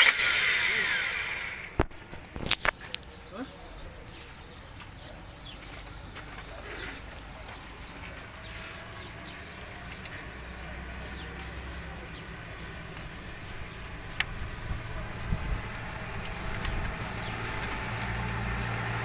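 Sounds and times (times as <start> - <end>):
diesel car engine idling: 0.0 - 1.8, 7.0 - 19.0
small birds chirping: 0.0 - 19.0.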